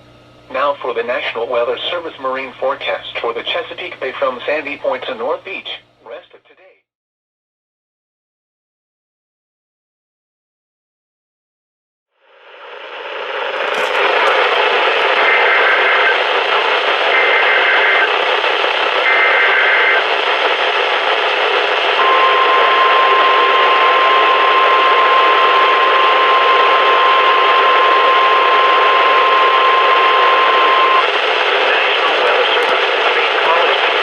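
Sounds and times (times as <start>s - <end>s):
static hiss: 12.4s - 34.0s
steady warning alarm tone: 13.6s - 31.3s.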